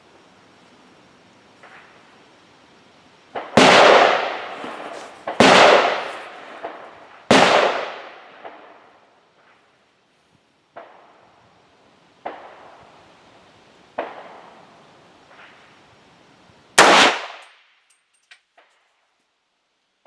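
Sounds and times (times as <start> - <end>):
loud rifle shot: 3.4 - 8.7, 16.8 - 17.4
faint gunshots: 3.4 - 8.8, 16.8 - 17.4
light clinks: 17.4 - 19.4.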